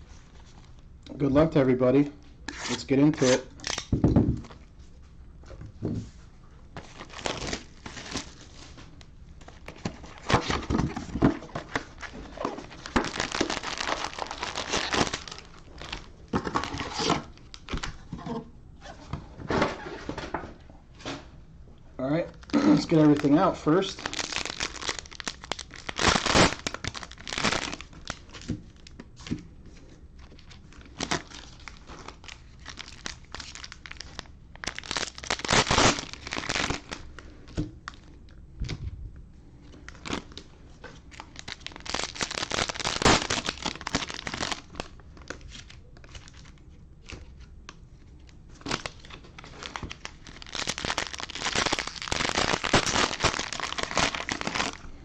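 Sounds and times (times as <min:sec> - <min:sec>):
plastic wrapping crinkling and tearing: 0:02.5 - 0:04.7, 0:06.8 - 0:18.1, 0:22.4 - 0:38.2, 0:39.7 - 0:55.0
quiet handling of packs: 0:22.0 - 0:55.0.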